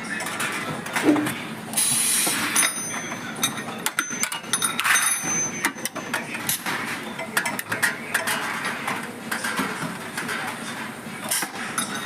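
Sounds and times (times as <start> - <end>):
metal parts clinking and knocking: 2.6 - 6.2.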